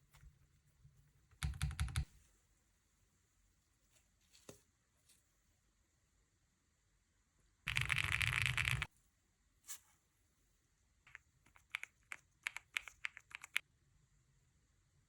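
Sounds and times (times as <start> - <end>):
mechanical keyboard typing: 1.4 - 2.1, 7.7 - 8.9, 11.1 - 13.6.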